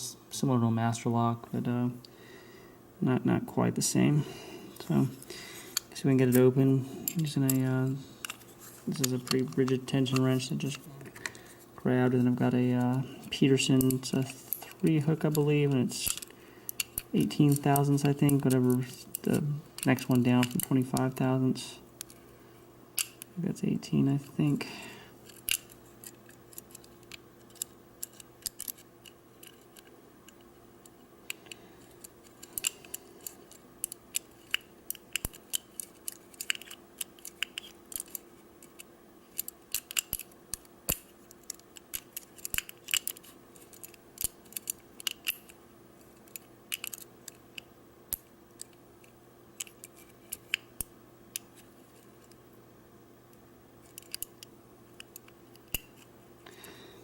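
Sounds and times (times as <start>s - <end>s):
lock picking metallic clicks: 26.5s - 45.6s, 46.3s - 48.8s, 53.8s - 56.1s.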